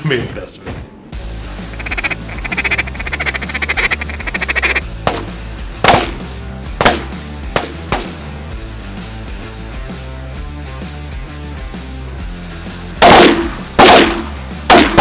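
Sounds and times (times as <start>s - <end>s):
rock music: 1.2s - 15.0s
ducks quacking: 1.6s - 6.0s
shotgun shots: 5.0s - 8.3s, 13.0s - 15.0s.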